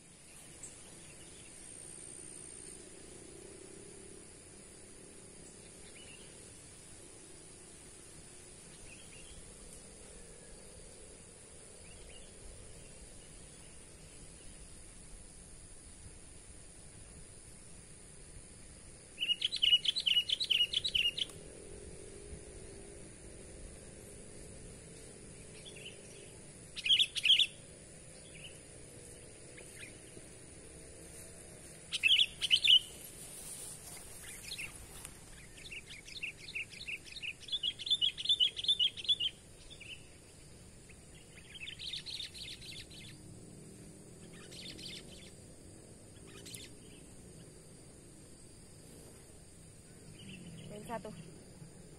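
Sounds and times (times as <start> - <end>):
outdoor background hiss: 0.0 - 51.9
faint bird chirps: 19.2 - 21.4, 25.4 - 30.2, 31.9 - 43.2, 44.2 - 45.4, 46.1 - 47.2, 49.8 - 51.9.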